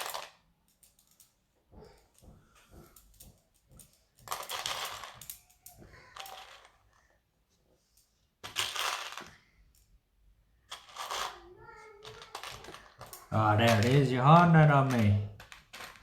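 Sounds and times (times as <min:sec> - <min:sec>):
plastic pieces rattling: 0:00.0 - 0:01.2, 0:04.2 - 0:06.8, 0:08.4 - 0:09.4, 0:10.7 - 0:11.4, 0:12.0 - 0:16.0.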